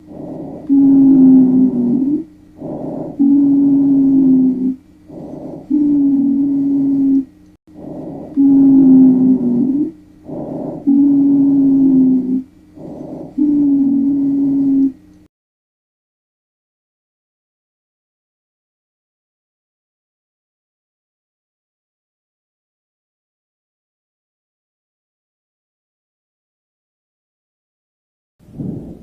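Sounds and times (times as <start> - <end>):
wheezing breaths: 0.0 - 7.0, 7.7 - 14.9.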